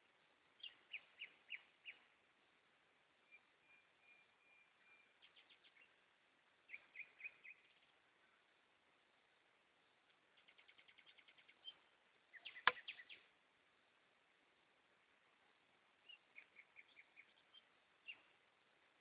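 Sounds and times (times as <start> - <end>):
birds twittering: 6.6 - 8.4, 10.3 - 13.3, 16.0 - 18.4.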